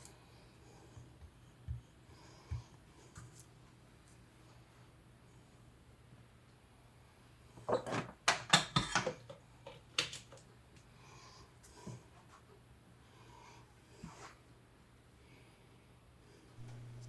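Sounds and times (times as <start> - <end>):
faint low hum: 9.0 - 17.0.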